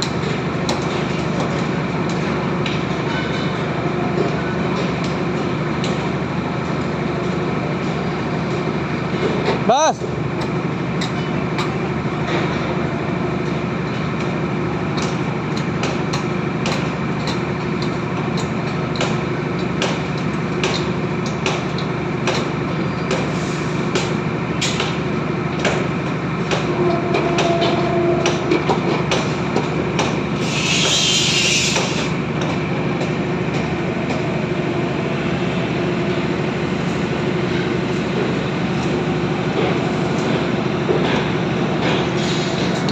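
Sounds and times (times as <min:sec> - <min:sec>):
construction machinery humming: 0:00.0 - 0:42.9
short burst of hiss: 0:30.4 - 0:32.0.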